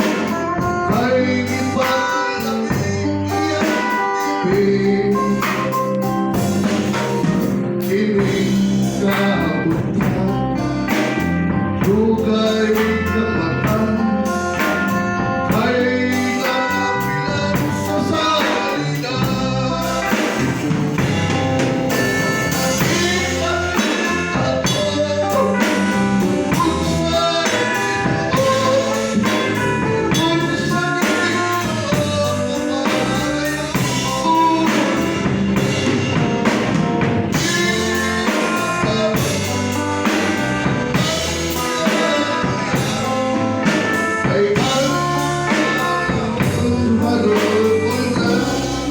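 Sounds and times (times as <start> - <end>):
singing: 0.0 - 5.8, 11.8 - 20.6, 22.6 - 35.3, 37.3 - 48.9
drum kit: 0.0 - 48.9
gospel band playing: 0.0 - 48.9.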